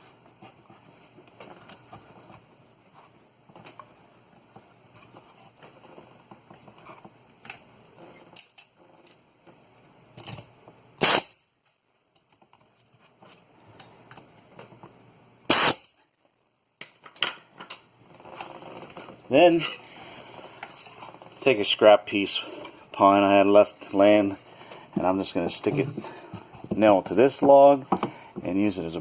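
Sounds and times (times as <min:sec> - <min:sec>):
nail gun firing: 0:11.0 - 0:11.4, 0:15.5 - 0:16.0.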